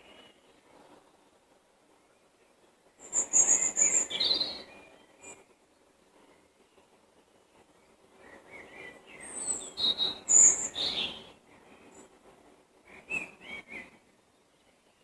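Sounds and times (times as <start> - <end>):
songbirds singing: 1.9 - 12.2.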